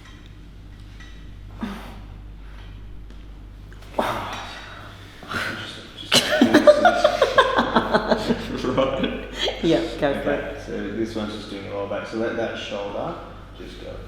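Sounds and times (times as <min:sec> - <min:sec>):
person laughing: 0:06.1 - 0:10.0.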